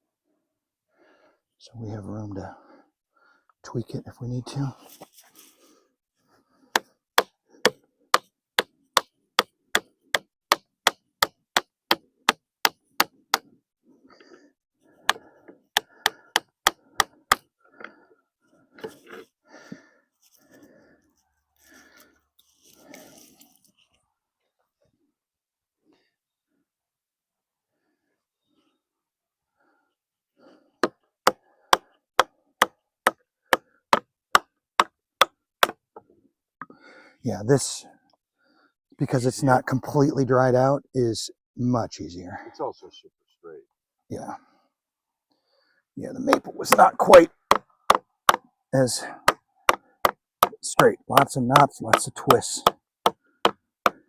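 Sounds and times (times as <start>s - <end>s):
chisel being struck: 6.8s - 13.4s, 49.2s - 54.0s.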